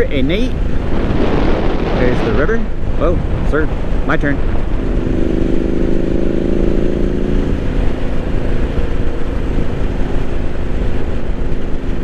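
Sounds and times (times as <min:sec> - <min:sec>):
wind rumble: 0:00.0 - 0:12.0
motorcycle engine running: 0:02.6 - 0:12.0.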